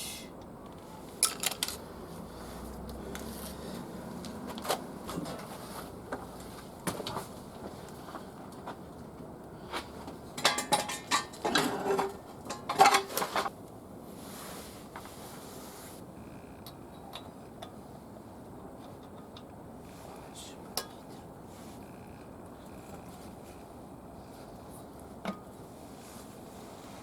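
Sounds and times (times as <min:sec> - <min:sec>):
metal clattering: 0:10.4 - 0:13.5.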